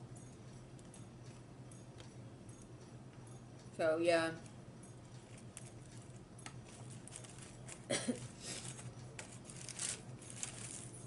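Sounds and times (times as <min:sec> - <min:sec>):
small clicks and crackles: 0:05.1 - 0:11.0.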